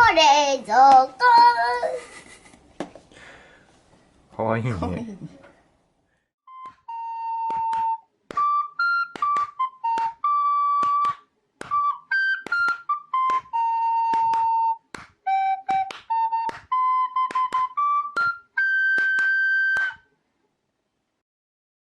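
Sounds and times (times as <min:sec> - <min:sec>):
jaunty flute-like melody: 0:06.5 - 0:20.1.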